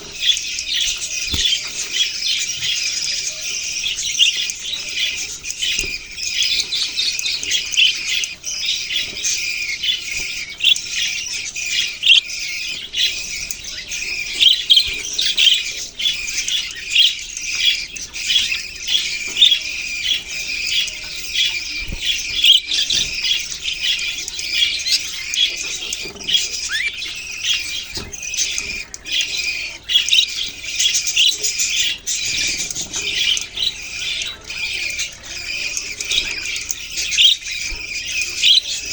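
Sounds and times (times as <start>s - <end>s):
budgerigars chirping and chattering: 0.0s - 38.9s.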